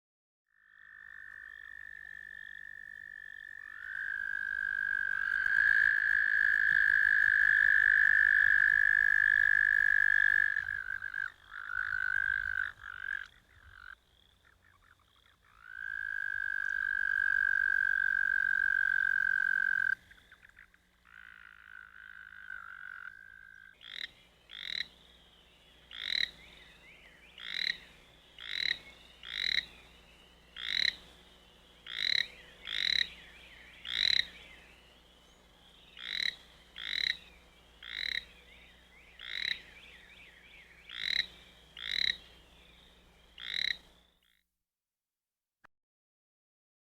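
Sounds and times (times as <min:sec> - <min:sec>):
short croaking calls: 0:00.5 - 0:25.0, 0:27.4 - 0:29.8, 0:31.9 - 0:33.2, 0:33.8 - 0:34.4, 0:36.0 - 0:38.3, 0:39.1 - 0:40.1, 0:40.8 - 0:42.3, 0:43.4 - 0:43.9
toads trilling: 0:00.5 - 0:25.0, 0:25.9 - 0:26.6, 0:27.4 - 0:29.8, 0:30.6 - 0:31.0, 0:31.8 - 0:33.2, 0:33.8 - 0:34.4, 0:36.0 - 0:38.3, 0:39.0 - 0:42.3, 0:43.4 - 0:43.8.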